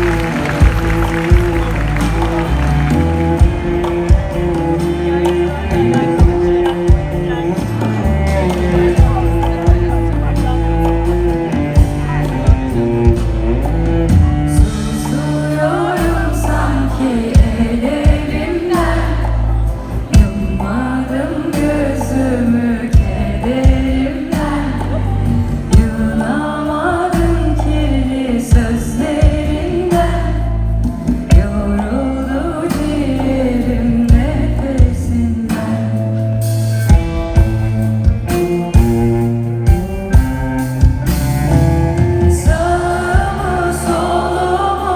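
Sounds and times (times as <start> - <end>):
live band with drum beat: 0.0 - 44.9
person singing: 42.0 - 44.9.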